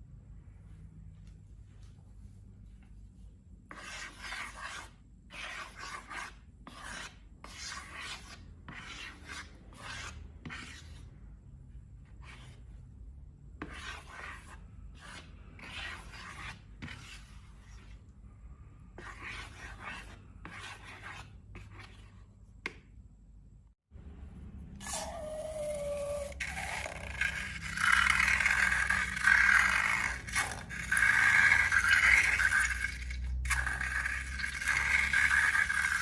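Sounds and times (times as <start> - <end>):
rasping rubbing strokes: 24.8 - 36.0.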